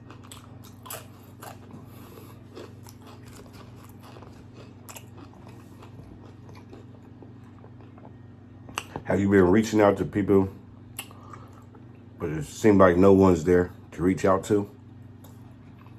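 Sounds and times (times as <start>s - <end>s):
chewing crisp food: 0.0s - 9.0s, 10.9s - 11.9s, 15.1s - 15.9s.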